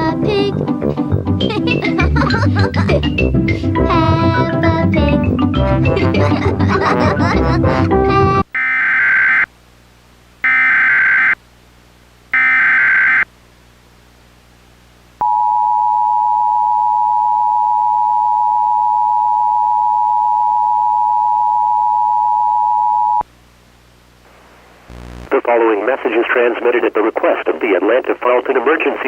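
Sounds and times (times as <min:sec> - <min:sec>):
two-tone attention signal: 0:15.2 - 0:23.2.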